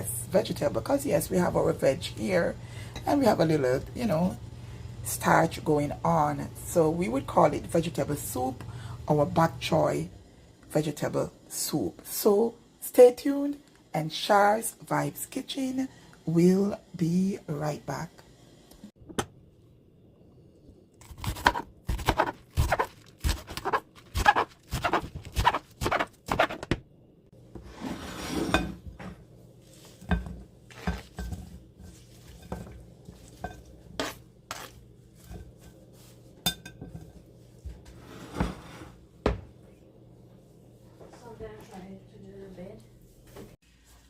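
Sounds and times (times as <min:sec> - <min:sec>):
dishes and pots clanking: 0:30.0 - 0:34.2, 0:36.4 - 0:37.2.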